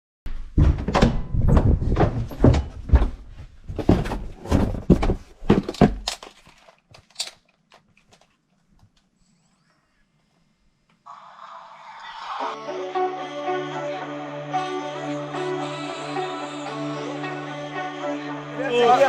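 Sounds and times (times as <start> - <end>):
heavy thumps and knocks: 0.3 - 6.1.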